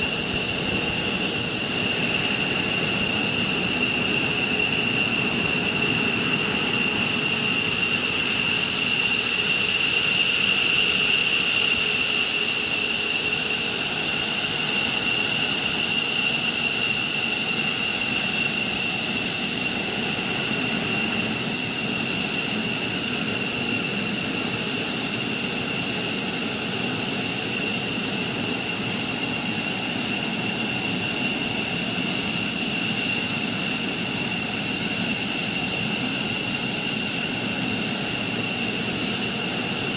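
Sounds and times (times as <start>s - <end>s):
high-pitched engine whine: 0.0s - 39.9s
jet engine running: 0.0s - 39.9s.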